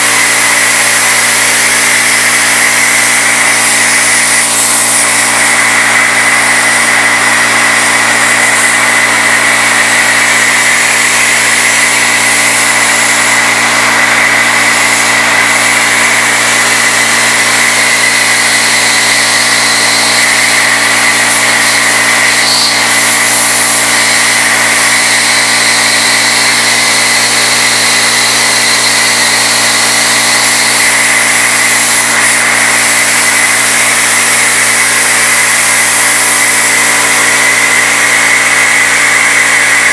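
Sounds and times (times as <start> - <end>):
milling machine cutting metal: 0.0 - 39.9.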